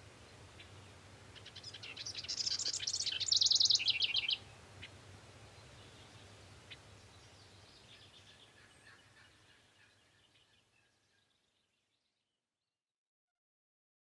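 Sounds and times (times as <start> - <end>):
faint outdoor ambience: 0.0 - 12.3
bird chirps: 1.4 - 4.9.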